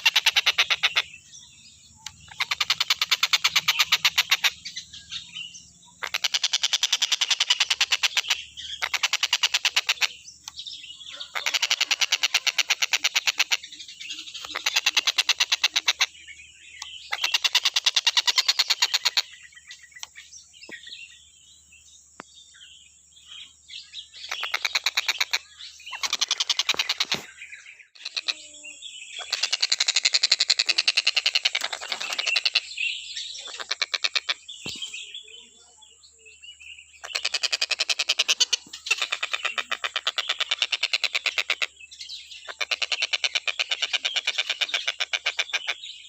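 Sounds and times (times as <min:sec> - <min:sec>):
bird calling in rattling notes: 0:00.0 - 0:01.1, 0:24.2 - 0:28.6, 0:29.2 - 0:34.9.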